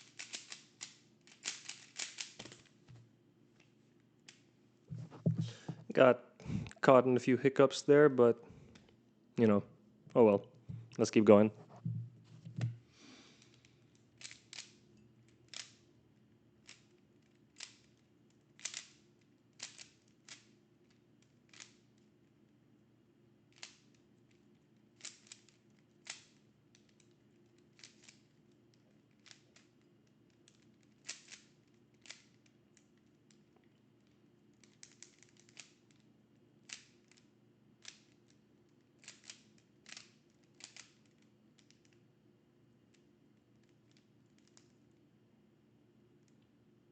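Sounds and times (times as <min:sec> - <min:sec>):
puzzle cube clicks: 0:00.0 - 0:02.7, 0:18.6 - 0:19.0, 0:19.6 - 0:20.6, 0:21.5 - 0:21.8, 0:30.8 - 0:32.3, 0:39.0 - 0:41.8.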